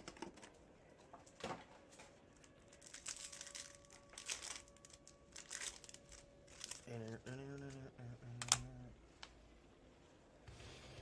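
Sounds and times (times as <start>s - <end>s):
wrapper crinkling and tearing: 2.3s - 7.8s.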